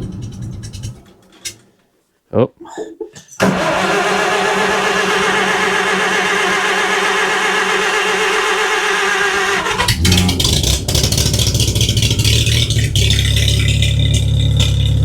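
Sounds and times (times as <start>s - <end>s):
chainsaw idling: 3.4s - 15.0s.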